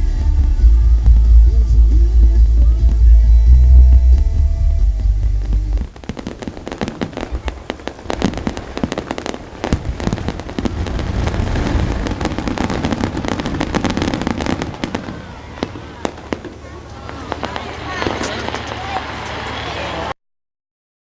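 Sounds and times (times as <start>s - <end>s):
music with heavy bass: 0.0s - 6.0s
steady low rumble: 0.0s - 19.6s
fireworks cracks and bangs: 0.0s - 20.1s.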